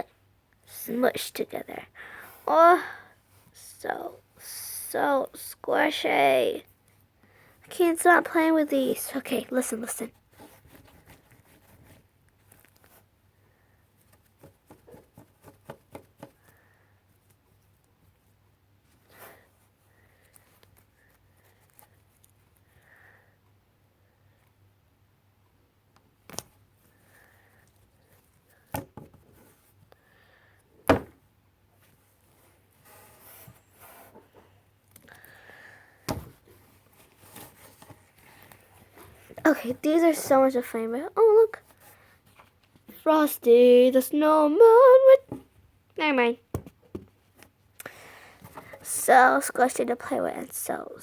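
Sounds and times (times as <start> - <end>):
rubber toys tapping and clicking: 14.1 - 16.6.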